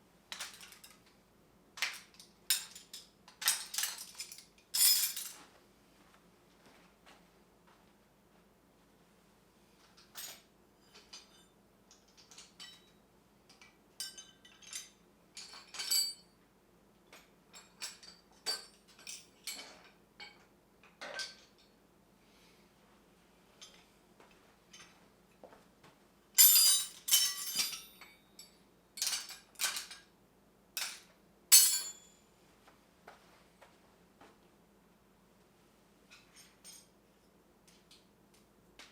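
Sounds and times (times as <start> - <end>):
metal hand tools clinking: 26.4 - 30.0, 30.8 - 32.1.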